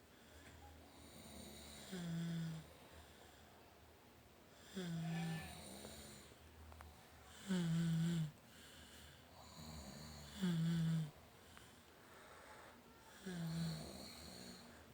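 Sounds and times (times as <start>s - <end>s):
fainter higher snores: 1.0s - 2.7s, 4.6s - 6.3s, 7.4s - 8.4s, 9.4s - 11.2s, 13.0s - 14.8s
loud snores: 1.0s - 2.7s, 4.6s - 6.3s, 7.3s - 8.4s, 9.4s - 11.2s, 13.2s - 14.8s.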